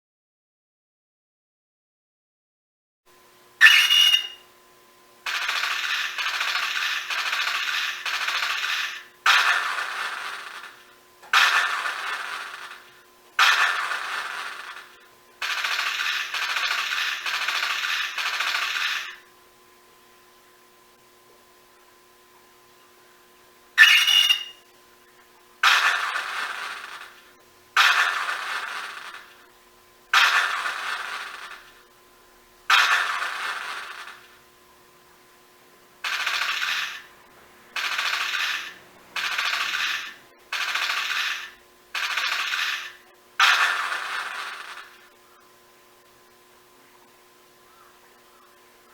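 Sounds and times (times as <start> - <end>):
electronic rapid-fire sound effect: 3.6 - 4.4, 5.3 - 19.3, 23.8 - 24.6, 25.6 - 29.4, 30.1 - 31.8, 32.7 - 34.4, 36.0 - 45.1.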